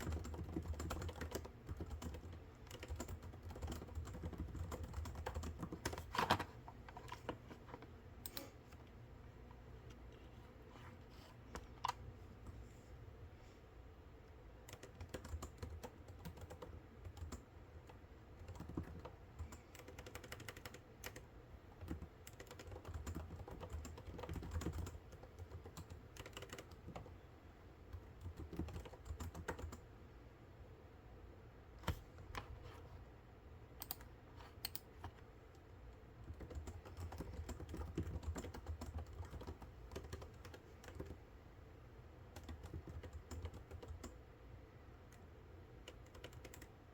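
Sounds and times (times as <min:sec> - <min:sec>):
typing on computer keyboard: 0:00.0 - 0:06.4, 0:14.6 - 0:27.2, 0:27.9 - 0:29.9, 0:33.8 - 0:35.2, 0:36.2 - 0:41.2, 0:42.3 - 0:44.2, 0:45.8 - 0:46.8
low background hum: 0:00.0 - 0:46.9.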